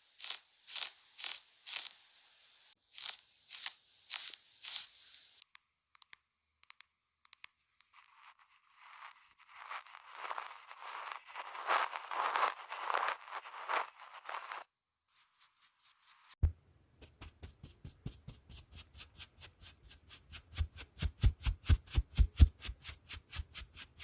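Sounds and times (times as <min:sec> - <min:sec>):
crinkling and rustling: 0:07.4 - 0:16.4.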